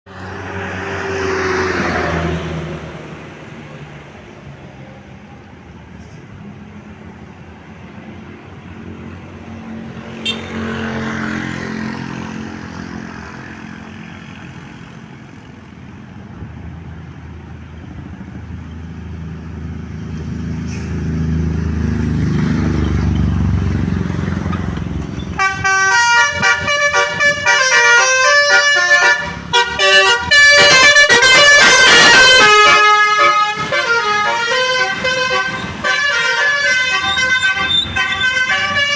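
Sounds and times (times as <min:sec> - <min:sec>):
musical bus horn melody: 0:10.2 - 0:10.8, 0:25.2 - 0:38.9
heavy vehicle engine running: 0:14.9 - 0:38.9.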